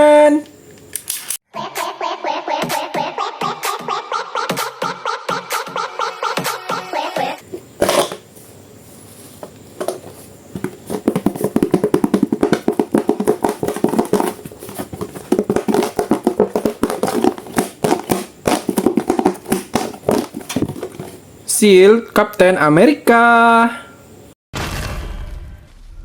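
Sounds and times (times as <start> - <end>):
music with rapid tapping beat: 2.6 - 7.4, 11.0 - 20.5.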